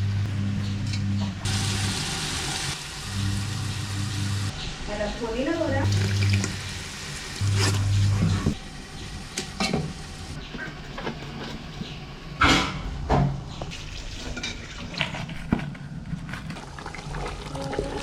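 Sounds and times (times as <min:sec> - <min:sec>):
low hum: 0:00.0 - 0:10.4
food sizzling in a pot: 0:01.4 - 0:04.5, 0:05.8 - 0:10.3.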